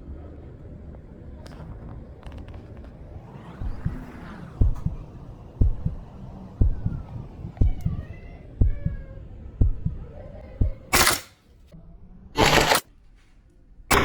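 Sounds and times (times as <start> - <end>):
dull low thumps: 3.6 - 11.0
airsoft rifle bursts: 10.9 - 11.3.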